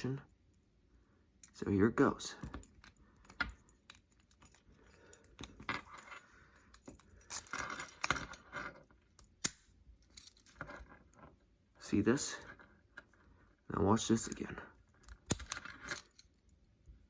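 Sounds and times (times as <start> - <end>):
keys jangling: 2.4 - 8.5, 15.0 - 16.5
padlock shackle springing open: 15.0 - 16.4.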